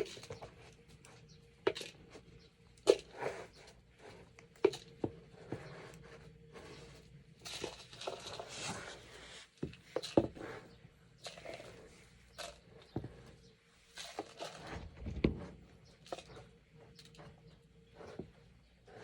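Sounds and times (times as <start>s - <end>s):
gritty litter scraping: 7.4s - 9.5s.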